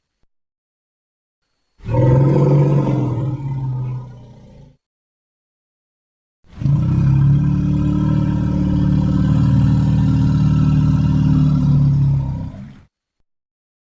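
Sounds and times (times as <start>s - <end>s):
low rumbling growl: 1.9s - 4.8s, 6.5s - 12.9s.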